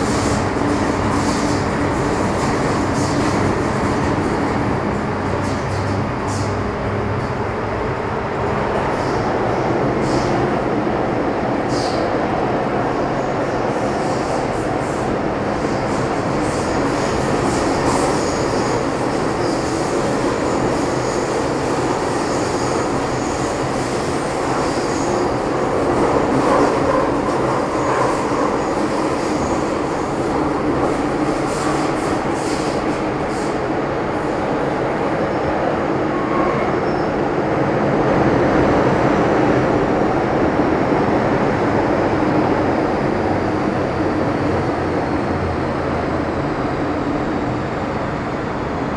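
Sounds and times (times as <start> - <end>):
train wheels and motors rumbling: 0.0 - 35.7.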